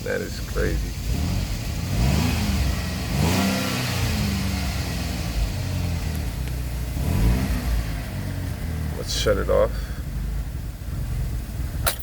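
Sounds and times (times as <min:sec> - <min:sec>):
car engine idling roughly: 0:00.0 - 0:02.0.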